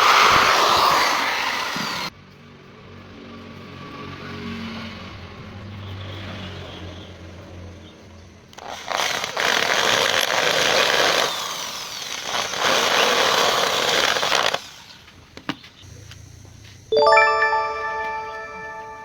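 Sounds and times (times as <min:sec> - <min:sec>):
power tool cutting wood: 0:00.0 - 0:02.1.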